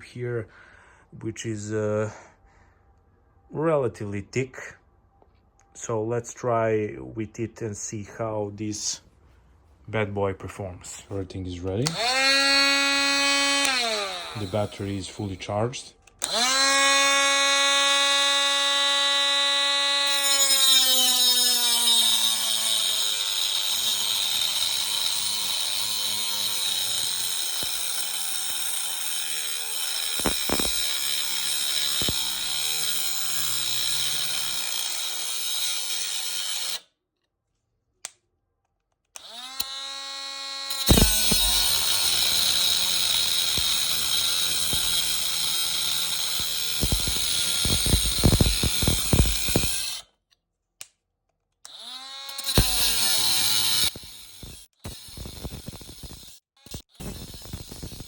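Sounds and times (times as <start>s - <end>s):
angle grinder cutting metal: 11.8s - 15.5s, 16.2s - 36.9s, 39.2s - 50.1s, 51.6s - 58.0s.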